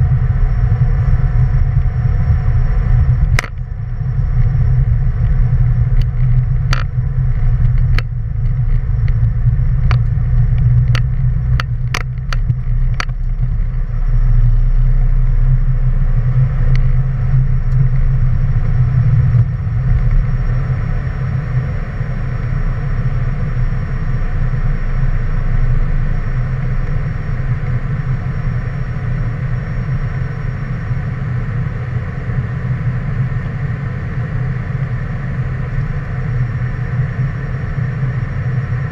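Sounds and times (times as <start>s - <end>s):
jet engine rumble: 0.0s - 38.9s.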